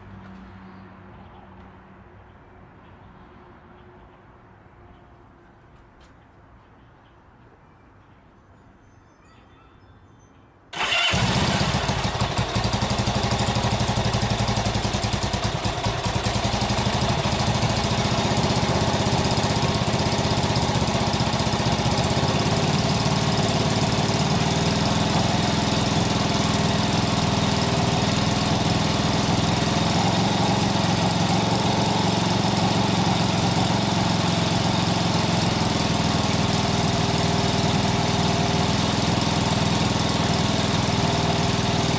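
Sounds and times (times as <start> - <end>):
motorcycle engine starting and running: 10.8 - 41.9.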